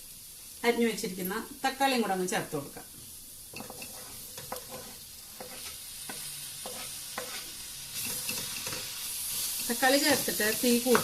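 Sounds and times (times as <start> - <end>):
food sizzling in oil: 0.0 - 11.0
spoon scraping a pan: 3.5 - 11.0.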